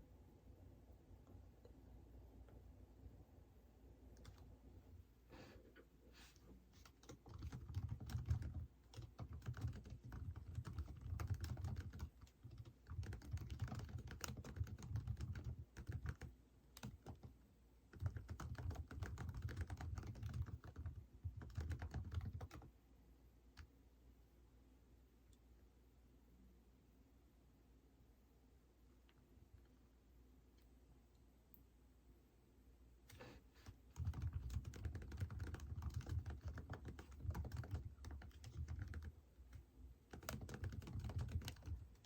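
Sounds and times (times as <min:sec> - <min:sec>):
typing on computer keyboard: 0:04.2 - 0:04.5, 0:06.7 - 0:22.7, 0:33.1 - 0:42.0.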